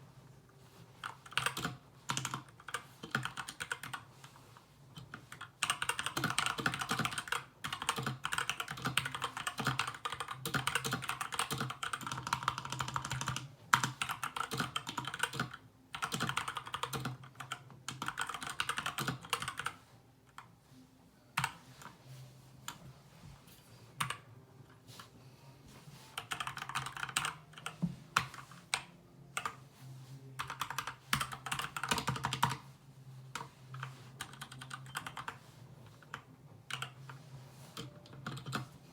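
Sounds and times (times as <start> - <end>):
fast typing on mechanical keyboard: 1.0 - 4.0, 5.0 - 19.8, 26.2 - 28.5, 30.4 - 32.6, 34.2 - 35.4, 36.1 - 37.0, 37.8 - 38.7.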